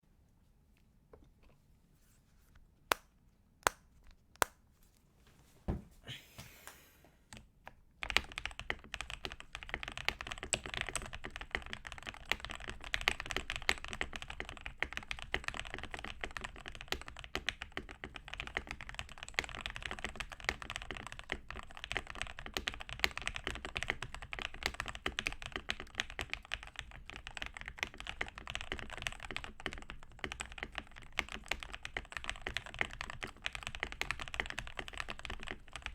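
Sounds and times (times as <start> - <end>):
mechanical keyboard typing: 7.3 - 35.9.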